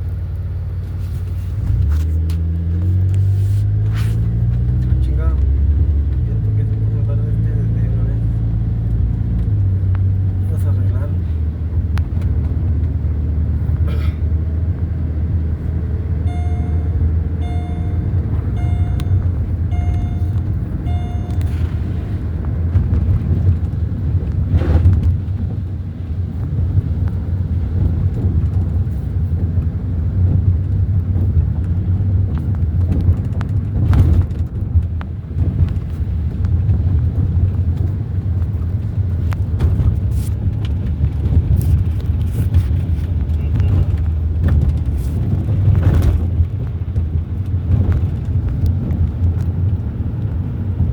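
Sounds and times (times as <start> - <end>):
low rumble: 0.0 - 50.9
short electronic beeps: 16.2 - 21.8.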